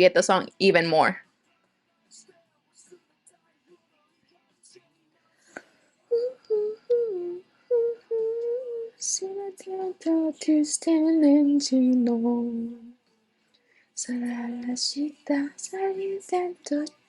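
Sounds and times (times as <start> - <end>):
woman singing unaccompanied: 6.1 - 13.1, 14.0 - 17.0.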